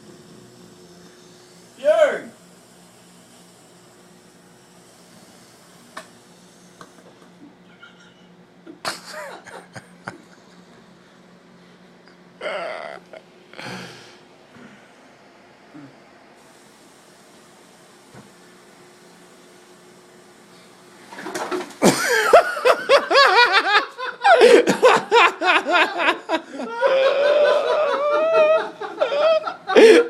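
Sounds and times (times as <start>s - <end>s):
man snorting in sleep: 0.0s - 1.2s, 12.4s - 15.0s
people laughing loudly: 8.8s - 10.3s, 21.8s - 30.0s
steady hiss: 16.4s - 21.9s.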